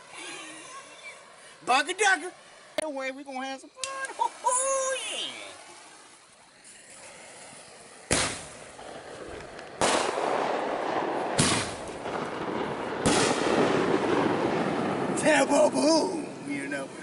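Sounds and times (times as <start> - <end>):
fireworks rushing spray: 3.9 - 17.0
fireworks bangs: 6.6 - 17.0.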